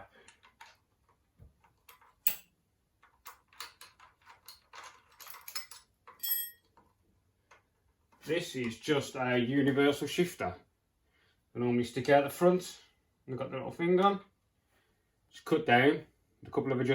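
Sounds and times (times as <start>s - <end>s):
metal parts and tools clicking: 1.8s - 6.9s
ringing metal clink: 5.2s - 6.7s.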